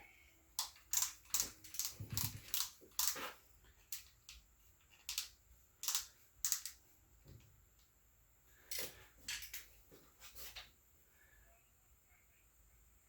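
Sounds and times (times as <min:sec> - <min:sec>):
torque wrench metallic clicks: 0:05.0 - 0:06.8.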